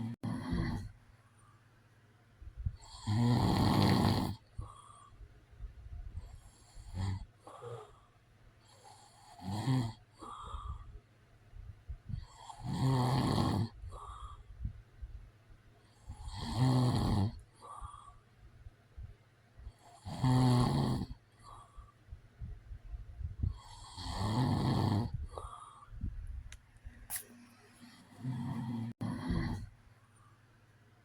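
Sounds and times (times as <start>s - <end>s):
man snoring: 0.0s - 0.9s, 2.8s - 4.9s, 6.4s - 8.0s, 8.7s - 10.8s, 12.2s - 14.3s, 16.1s - 18.0s, 19.8s - 21.6s, 23.5s - 25.6s, 28.1s - 29.7s
soft breaths: 4.4s - 9.4s, 10.1s - 12.7s, 13.7s - 16.3s, 17.4s - 20.0s, 21.2s - 24.0s, 25.0s - 30.7s.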